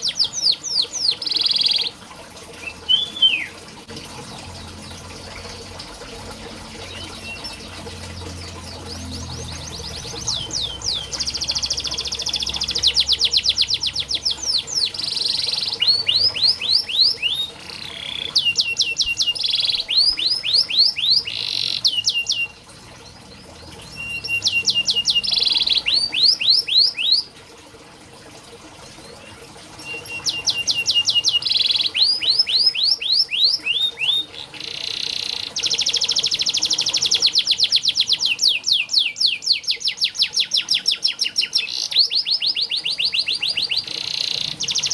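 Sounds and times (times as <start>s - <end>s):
canary singing trills: 0.0s - 3.7s, 6.8s - 27.3s, 29.2s - 44.9s.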